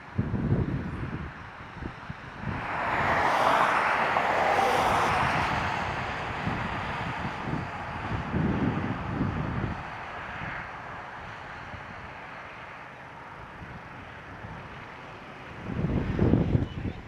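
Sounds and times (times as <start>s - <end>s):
wind buffeting microphone: 0.0s - 10.8s, 15.6s - 17.0s.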